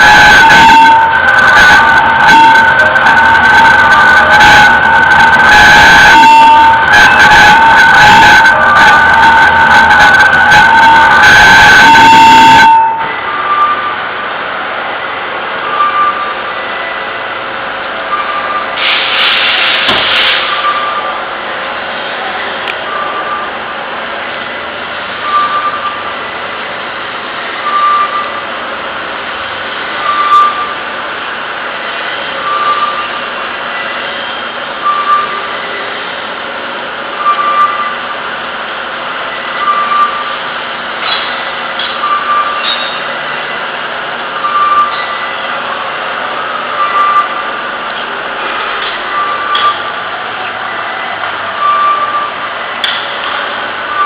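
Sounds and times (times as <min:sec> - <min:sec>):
short electronic beep: 0:00.0 - 0:14.0, 0:15.6 - 0:16.9, 0:18.1 - 0:19.0, 0:20.4 - 0:21.2, 0:22.9 - 0:23.5, 0:25.2 - 0:26.1, 0:27.6 - 0:28.4, 0:30.0 - 0:30.8, 0:32.4 - 0:33.2, 0:34.8 - 0:35.5, 0:37.2 - 0:38.0, 0:39.5 - 0:40.4, 0:42.0 - 0:43.0, 0:44.4 - 0:45.2, 0:46.7 - 0:47.4, 0:49.0 - 0:49.9, 0:51.6 - 0:52.4.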